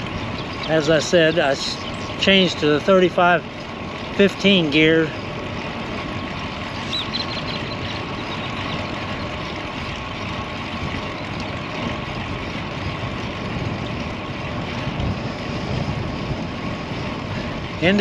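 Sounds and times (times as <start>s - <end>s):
wind rushing over microphone: 10.8s - 18.0s.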